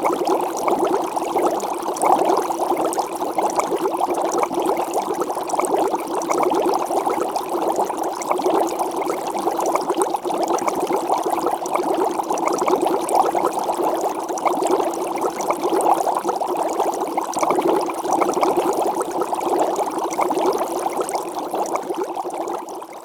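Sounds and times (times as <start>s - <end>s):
water boiling: 0.0s - 23.0s.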